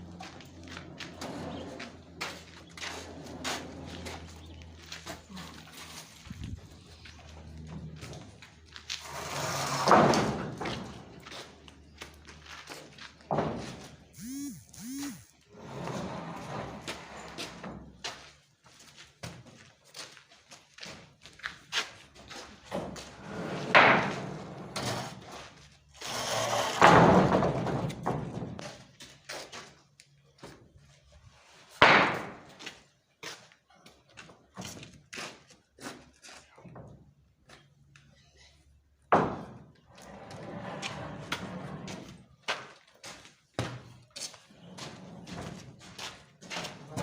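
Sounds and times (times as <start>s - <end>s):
rough scraping of timber: 0.7s - 11.2s, 13.5s - 17.8s, 22.8s - 28.7s, 39.9s - 42.2s.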